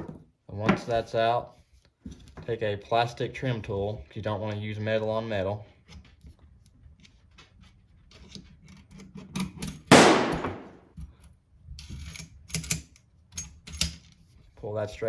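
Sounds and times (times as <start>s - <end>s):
loud sharp snap: 9.9s - 10.8s.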